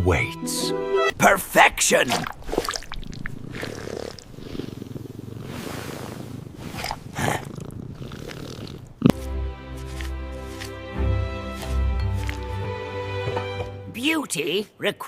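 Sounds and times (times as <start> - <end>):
cat purring: 2.9 - 9.2.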